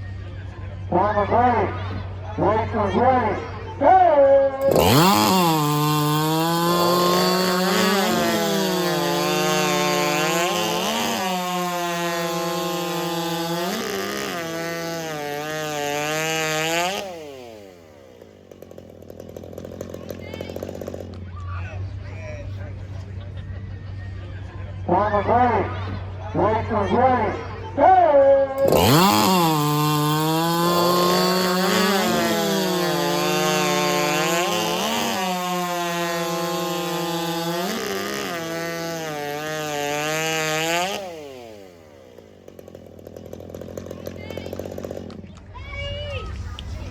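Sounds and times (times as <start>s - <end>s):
chainsaw cutting through log: 4.2s - 21.4s, 28.5s - 45.5s.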